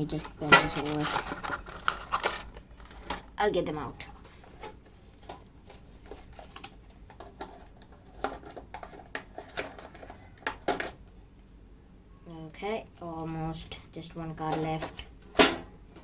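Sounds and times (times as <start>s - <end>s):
cards rustling in cardboard box: 0.0s - 3.2s, 4.2s - 11.0s.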